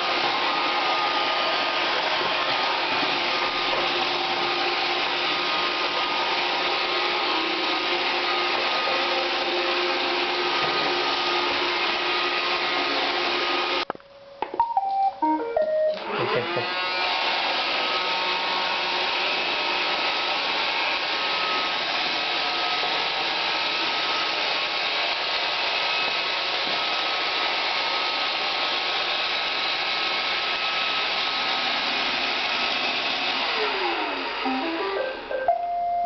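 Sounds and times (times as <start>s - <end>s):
robot vacuum whirring: 0.0s - 13.8s, 15.9s - 22.3s, 31.6s - 35.5s.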